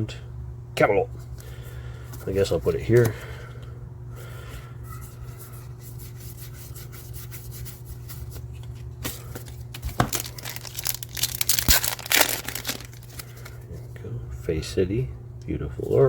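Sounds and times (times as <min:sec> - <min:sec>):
steady low hum: 0:00.0 - 0:16.0
wrapper crinkling and tearing: 0:09.4 - 0:13.6.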